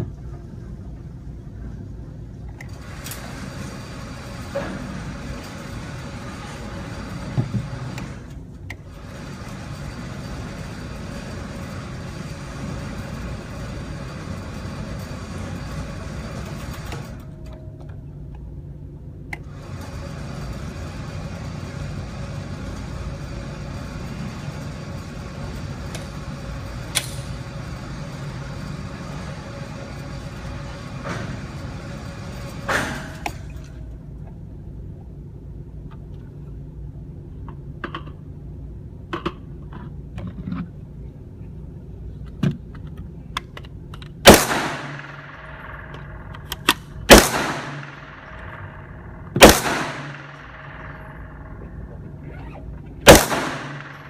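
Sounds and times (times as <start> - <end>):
steady low hum: 0.0 - 54.0
faint shots and clicks: 42.8 - 52.2, 53.0 - 54.0
loud gunshots with echo: 44.2 - 51.9, 53.0 - 54.0.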